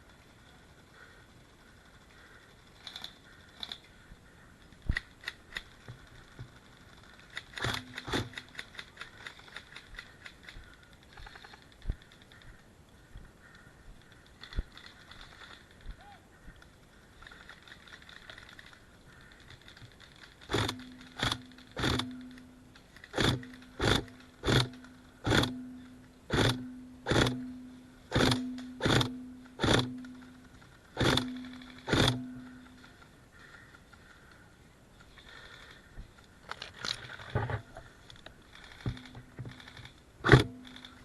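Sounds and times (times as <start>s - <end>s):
faint clicks: 0.9s - 26.7s, 27.3s - 41.0s
airsoft gun shots: 40.2s - 40.6s.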